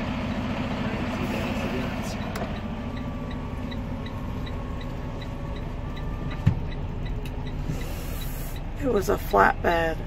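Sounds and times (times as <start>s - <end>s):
road noise: 0.0s - 10.0s
truck engine rumble: 0.0s - 10.0s
faint regular ticking: 2.2s - 9.5s.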